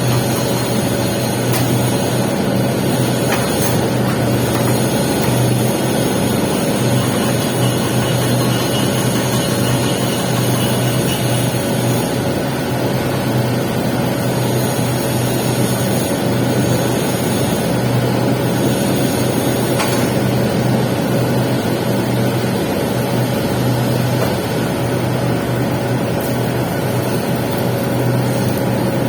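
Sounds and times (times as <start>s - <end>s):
welding arc hissing and crackling: 0.0s - 13.6s, 14.2s - 21.6s, 23.2s - 29.0s
low machine hum: 0.0s - 14.3s.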